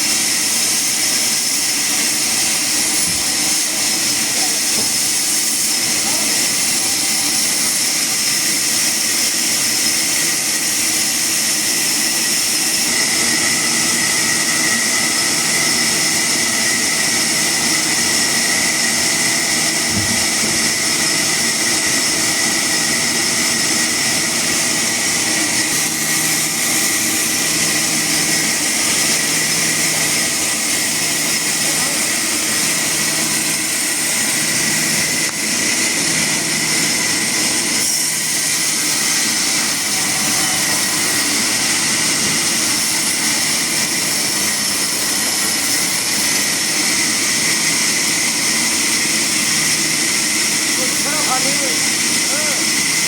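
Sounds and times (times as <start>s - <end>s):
steady whine: 0.0s - 53.0s
woodworking machine hissing: 0.0s - 53.0s.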